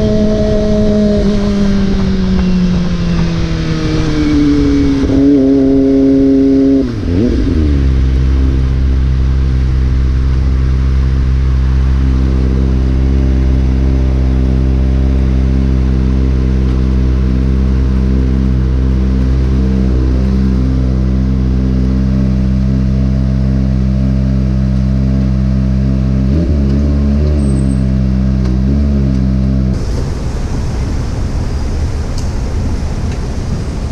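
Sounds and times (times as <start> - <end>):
motorcycle engine: 0.0 - 33.9.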